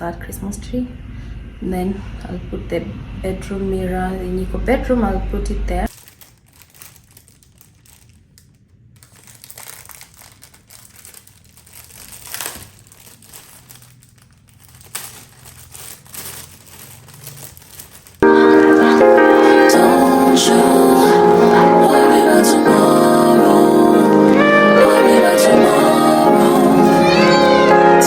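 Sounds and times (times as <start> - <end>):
rustling and crinkling: 5.9 - 18.3
music with singing: 18.2 - 28.0.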